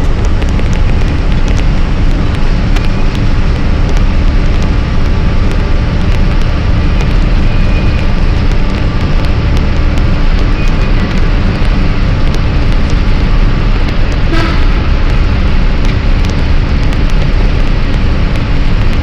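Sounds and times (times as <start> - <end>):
vehicle driving through tunnel: 0.0 - 19.0.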